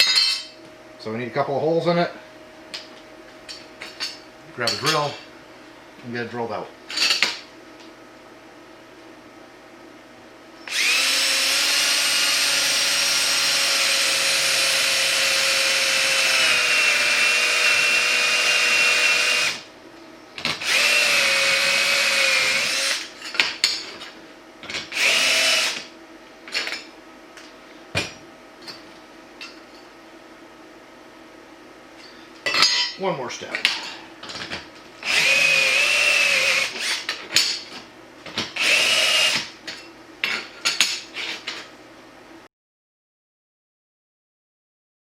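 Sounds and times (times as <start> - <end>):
electric drill drilling aluminum: 10.7 - 19.6, 20.5 - 23.2, 24.8 - 25.9, 35.0 - 37.2, 38.6 - 39.5.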